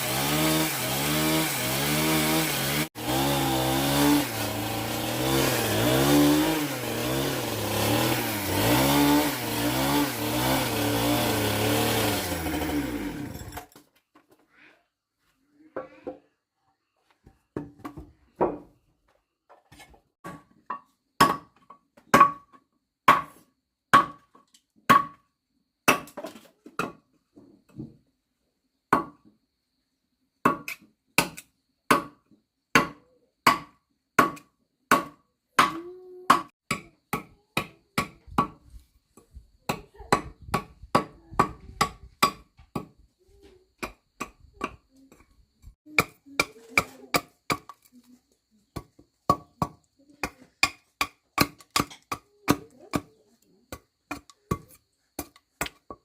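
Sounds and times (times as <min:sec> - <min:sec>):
hand tool striking wood: 0:19.7 - 0:25.2, 0:28.9 - 0:29.2, 0:30.4 - 0:38.6, 0:39.7 - 0:43.0, 0:43.8 - 0:45.2, 0:45.9 - 0:47.9, 0:48.8 - 0:56.0.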